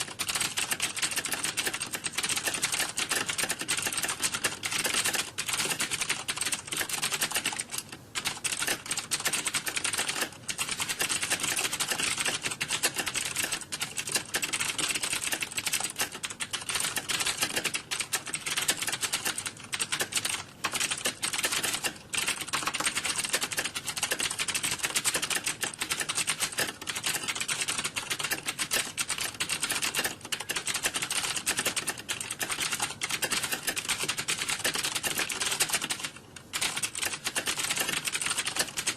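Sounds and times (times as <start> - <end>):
computer keyboard typing: 0.0 - 38.9.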